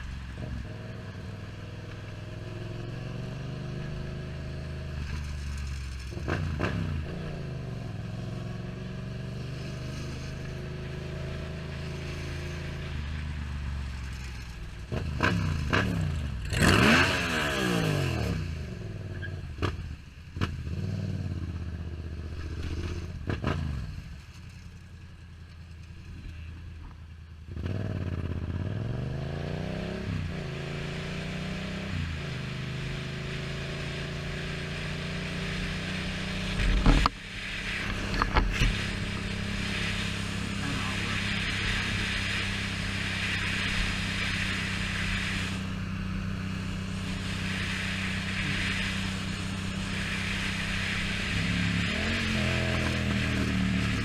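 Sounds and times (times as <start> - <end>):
motorcycle engine revving: 0.0 - 25.0, 27.4 - 54.0
wind rush: 36.6 - 54.0.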